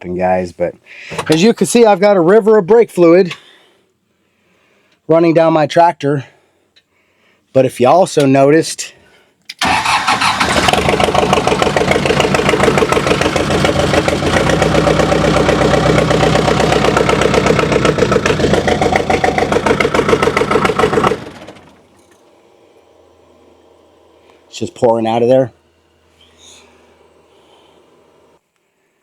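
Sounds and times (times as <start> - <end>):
tractor engine running: 9.6 - 28.4.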